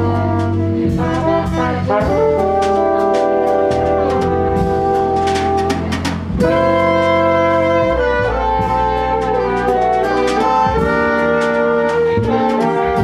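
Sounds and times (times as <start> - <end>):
bass: 0.0 - 13.0
drums with light cymbals: 0.0 - 13.0
horns holding chords: 0.0 - 13.0.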